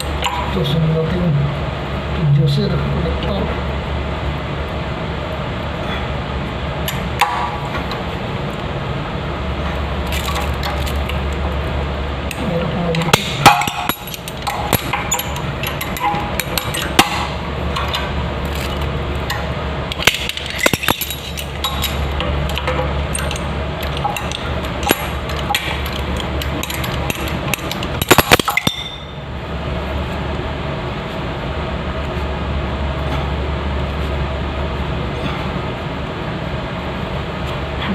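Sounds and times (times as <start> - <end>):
steady low hum: 0.0 - 37.9
metal fittings clinking: 13.4 - 29.1.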